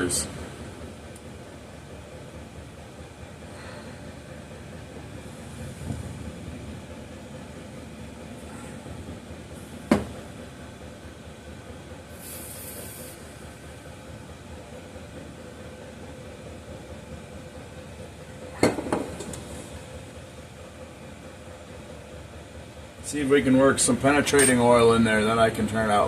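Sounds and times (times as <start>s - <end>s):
steady background hum: 0.0s - 26.0s
dull knock: 9.9s - 10.2s
brief high hiss: 12.2s - 13.2s.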